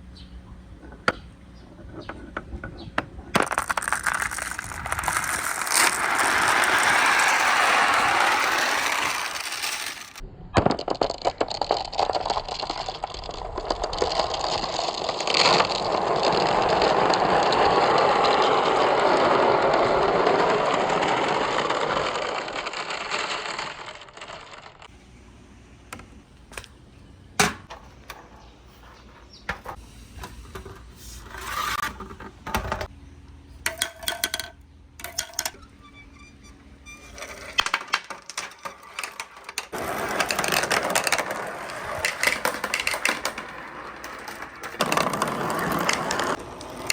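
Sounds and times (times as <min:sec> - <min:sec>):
marbles clattering on wooden run: 0:03.4 - 0:24.9, 0:37.1 - 0:46.9
ringing tones: 0:35.6 - 0:37.2.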